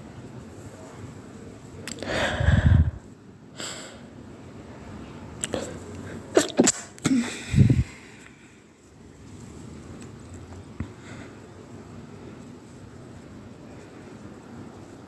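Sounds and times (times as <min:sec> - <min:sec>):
quick sharp breaths: 0:02.0 - 0:03.0, 0:07.1 - 0:08.7
person stifling sneezes: 0:06.3 - 0:07.8.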